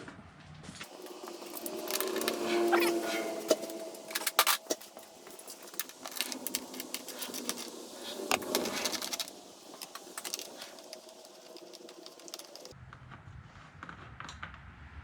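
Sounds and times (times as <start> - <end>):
hand tools clinking on metal: 0.9 - 12.7.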